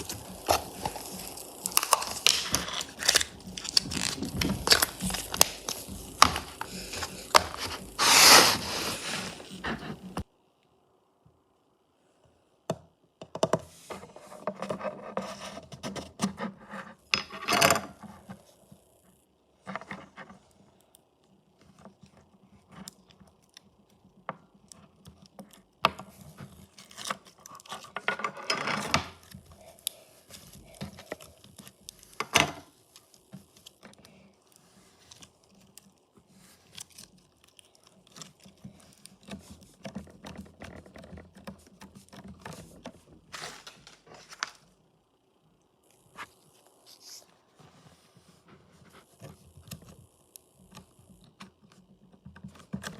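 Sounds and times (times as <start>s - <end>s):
slime squishing and crackling: 0.0s - 10.2s, 32.8s - 43.1s.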